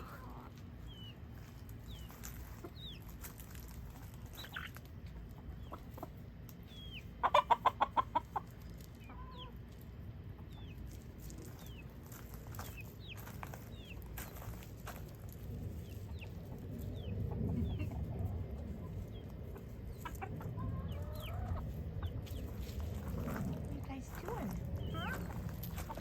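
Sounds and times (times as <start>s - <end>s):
chick peeping: 0.0s - 26.0s
hen clucking loudly: 7.1s - 9.6s, 17.2s - 23.5s.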